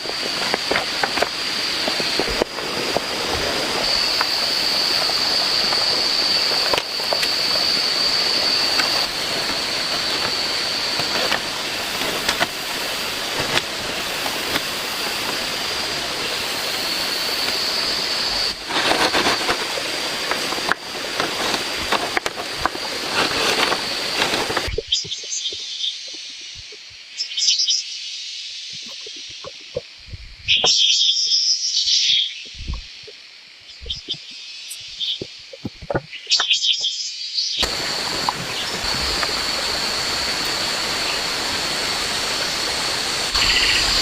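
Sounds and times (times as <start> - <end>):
rushing water: 0.0 - 24.9, 37.6 - 44.0
thin high whine: 0.0 - 26.9, 37.6 - 44.0.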